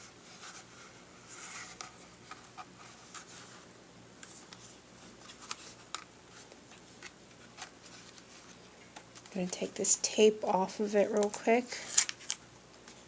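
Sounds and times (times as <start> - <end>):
soft rustle: 0.0 - 9.8.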